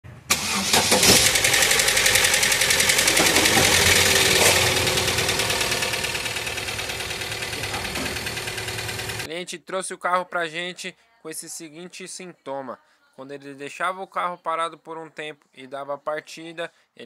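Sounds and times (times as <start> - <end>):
engine starting: 0.3 - 6.5
engine ticking clatter: 1.0 - 9.3.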